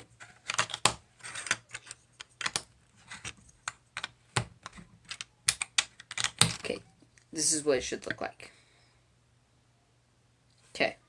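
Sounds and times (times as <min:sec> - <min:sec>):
plastic bricks clicking: 0:00.4 - 0:06.8.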